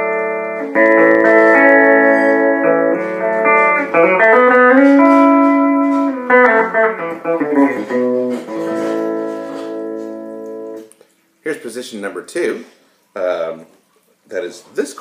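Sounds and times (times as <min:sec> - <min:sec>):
clean electric guitar: 0:00.0 - 0:11.0.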